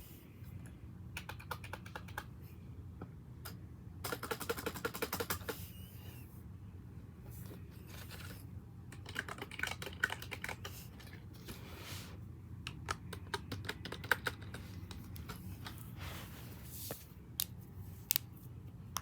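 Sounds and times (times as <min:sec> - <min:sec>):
keyboard typing: 0:01.2 - 0:02.3, 0:04.0 - 0:05.6, 0:08.9 - 0:10.7, 0:12.7 - 0:15.4.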